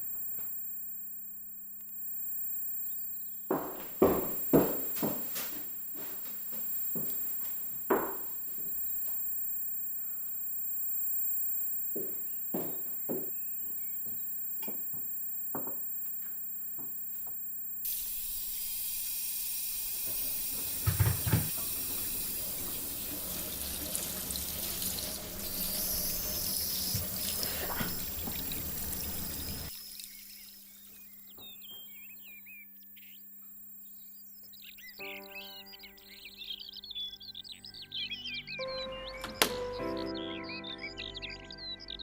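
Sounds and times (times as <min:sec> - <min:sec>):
steady hum: 0:02.0 - 0:14.6, 0:17.8 - 0:38.5
water running from a tap: 0:17.9 - 0:30.6.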